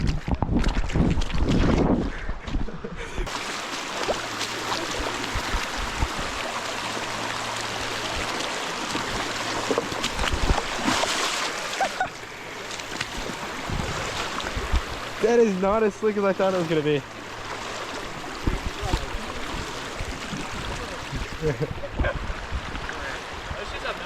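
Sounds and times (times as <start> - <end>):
footsteps on wet rocks: 0.0 - 2.7, 7.6 - 15.0
water rushing over rocks: 3.3 - 24.0.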